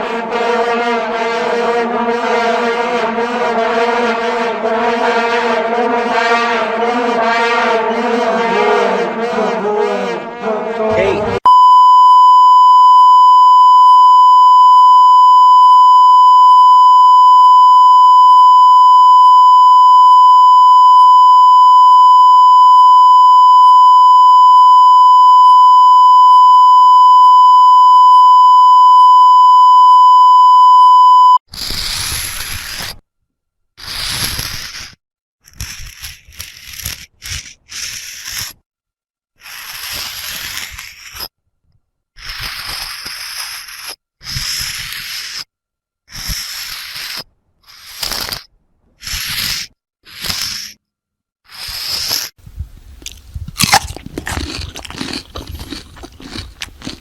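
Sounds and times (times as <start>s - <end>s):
steady electronic beep tone: 11.0s - 31.4s
harsh hissy scraping sounds: 49.0s - 50.8s.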